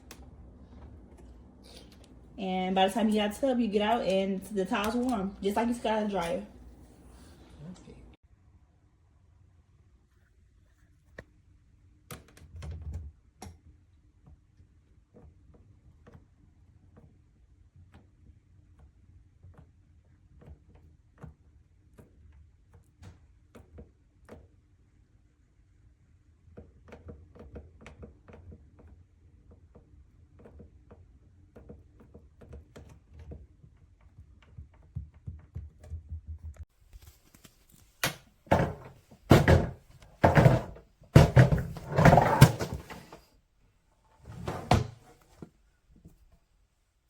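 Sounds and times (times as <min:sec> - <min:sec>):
loud thumps and knocks: 0:38.5 - 0:43.1.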